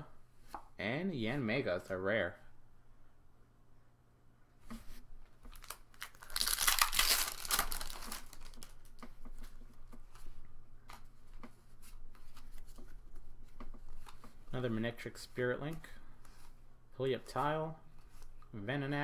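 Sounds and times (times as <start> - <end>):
cards rustling and clicking: 4.7 - 18.6
foil wrapper tearing and crinkling: 5.5 - 9.0.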